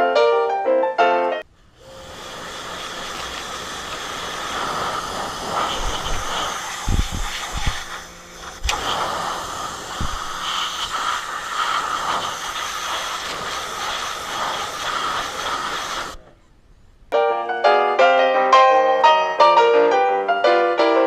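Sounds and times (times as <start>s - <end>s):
pressure washer water jet spraying: 1.8s - 16.2s.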